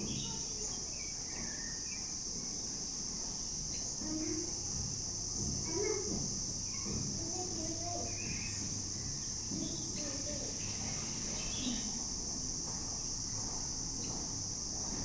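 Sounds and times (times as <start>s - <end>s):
insects droning: 0.0s - 15.0s
faint bird chirps: 9.6s - 12.0s.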